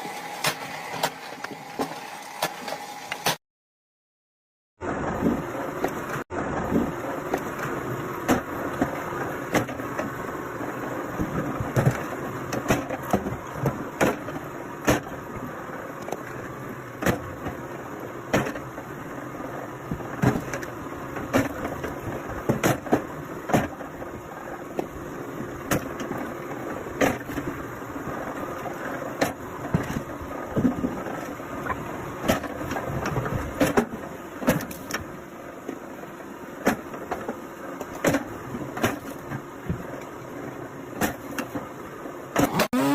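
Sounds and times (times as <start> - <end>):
wood processing machine engine: 0.0 - 3.4, 42.4 - 42.9.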